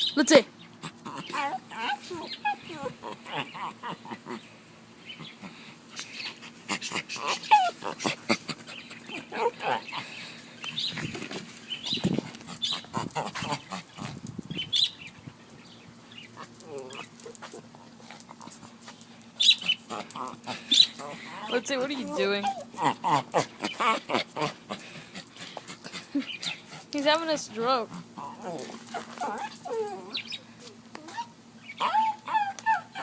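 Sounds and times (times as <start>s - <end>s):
dog vocalizing: 0.8s - 10.2s.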